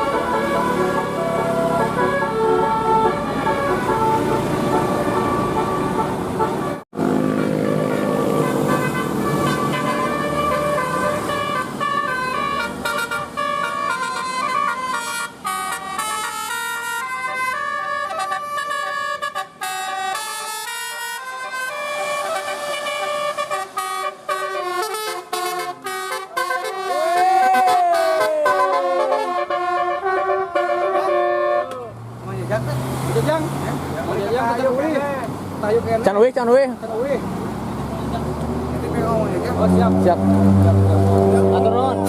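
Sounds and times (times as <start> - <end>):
bus engine running: 0.0 - 27.1
tuned air horns playing melody: 0.0 - 31.9.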